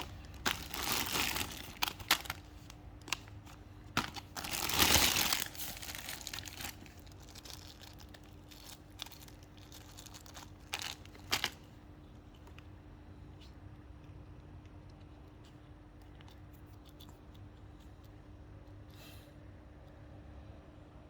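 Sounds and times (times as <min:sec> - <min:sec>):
packaging crinkling and rustling: 0:00.0 - 0:11.7
packaging tearing or crumpling: 0:00.0 - 0:11.7.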